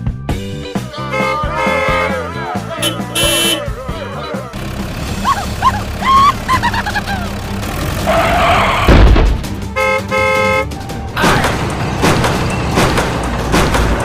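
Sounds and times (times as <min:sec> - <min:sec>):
background music: 0:00.0 - 0:14.0
car horn honks: 0:01.0 - 0:03.8, 0:09.7 - 0:10.7.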